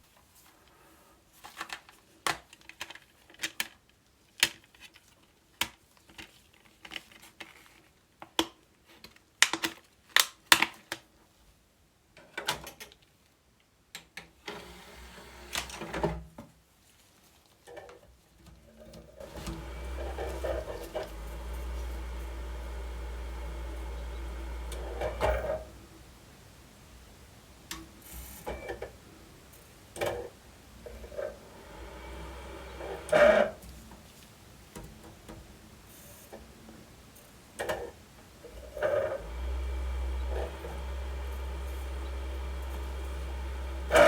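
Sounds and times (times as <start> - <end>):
machine running with low hum: 19.2 - 26.0, 30.8 - 33.8, 38.6 - 44.0.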